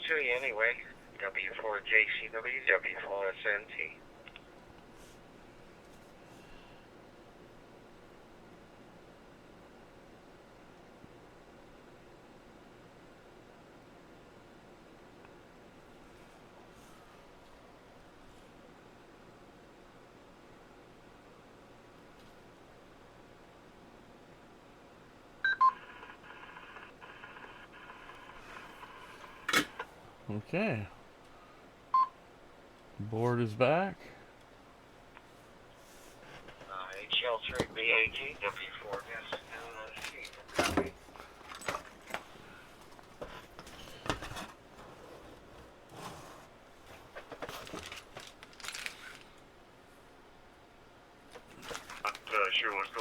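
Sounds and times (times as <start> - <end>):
radio speaker beeps: 25.5 - 29.5, 36.7 - 40.8
faint clicks and rustles: 35.2 - 45.8, 46.7 - 49.5, 51.3 - 53.0.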